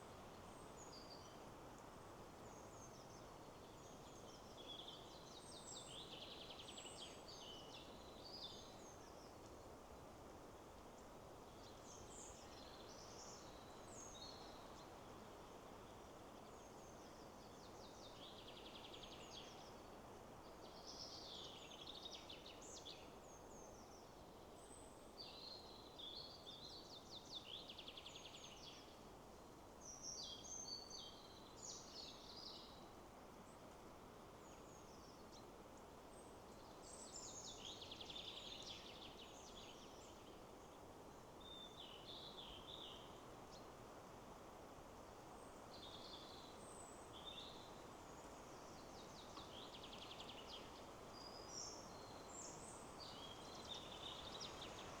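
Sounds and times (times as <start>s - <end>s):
songbirds chirping and trilling: 45.8s - 55.0s.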